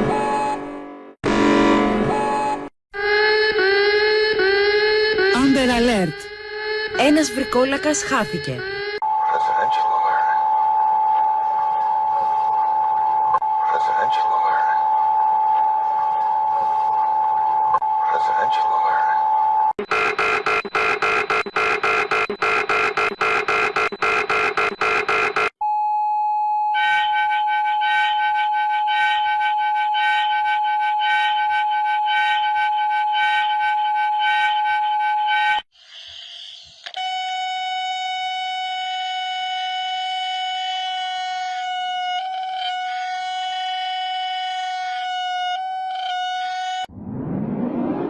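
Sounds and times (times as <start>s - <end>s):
steady tone with pulsing tones: 19.8s - 25.5s
fast pulsing alert signal: 19.8s - 25.6s.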